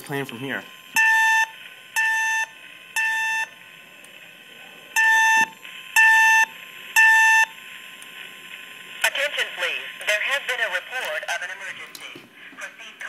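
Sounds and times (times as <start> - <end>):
fire alarm beeps: 0.9 - 3.6, 5.0 - 7.6.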